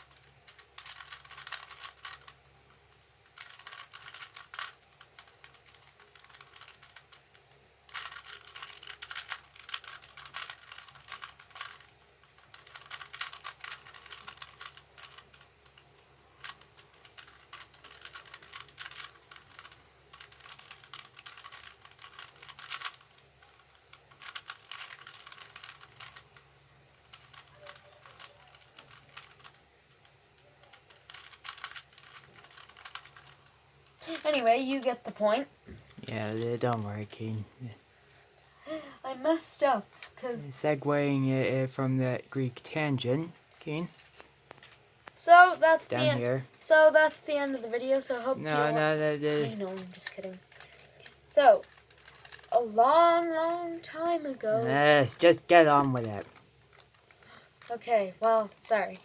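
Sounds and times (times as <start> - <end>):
plastic puzzle cube clicking: 0.0 - 34.4, 43.2 - 45.2, 47.6 - 52.6, 53.3 - 59.0.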